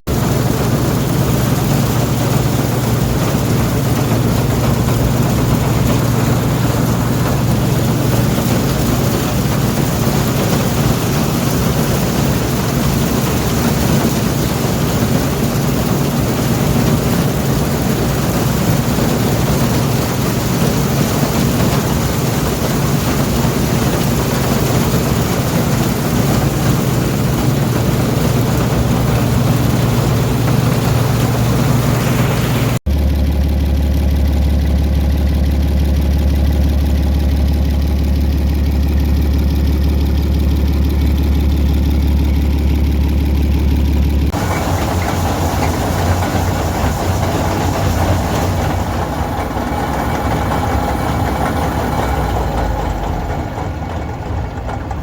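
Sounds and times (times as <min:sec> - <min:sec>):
combine harvester engine drone: 0:00.0 - 0:55.0
even rushing hiss: 0:00.1 - 0:32.8, 0:44.4 - 0:54.6.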